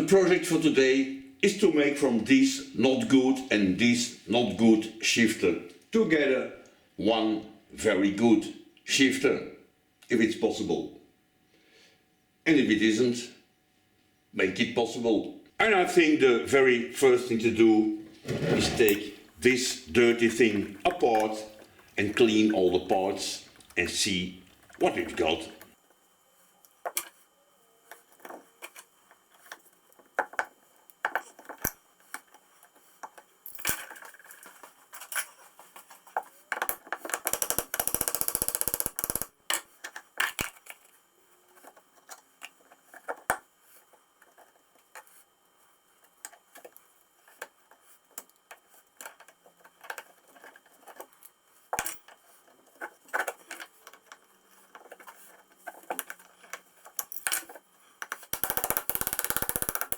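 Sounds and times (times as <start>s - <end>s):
metal parts and tools clinking: 56.9s - 57.6s.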